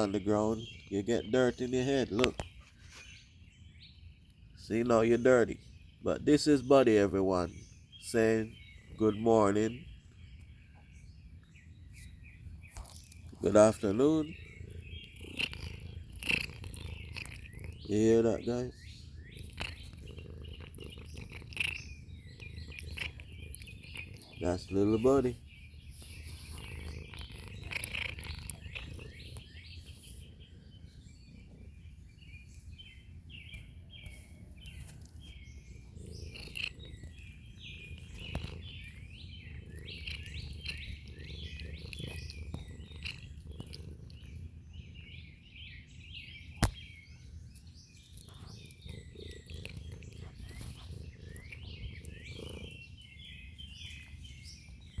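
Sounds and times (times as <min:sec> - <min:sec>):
birds chirping: 0:00.0 - 0:55.0
sharp click: 0:46.6 - 0:46.8.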